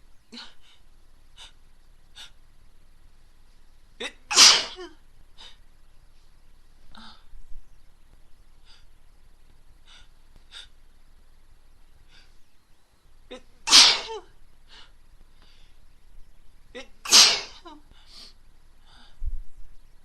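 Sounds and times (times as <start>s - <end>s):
woman sneezing: 4.3s - 4.9s
woman breathing and sniffing: 17.9s - 19.2s.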